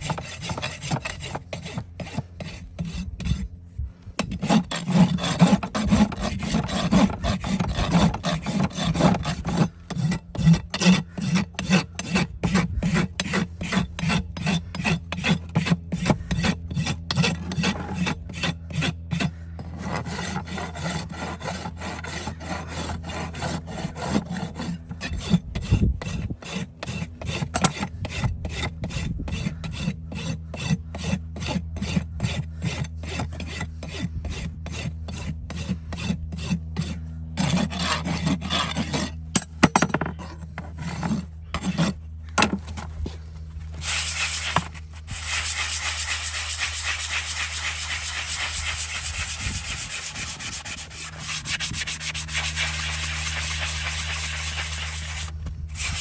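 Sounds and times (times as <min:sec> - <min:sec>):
steady low hum: 0:00.0 - 0:56.0
rhythmic rasping strokes: 0:43.8 - 0:56.0.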